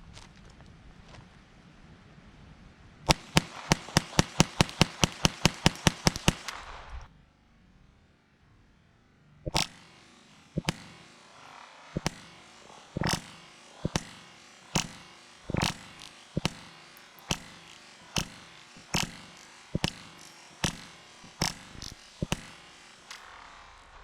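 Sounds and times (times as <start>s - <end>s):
pistol shots: 3.1s - 7.0s, 12.0s - 23.6s.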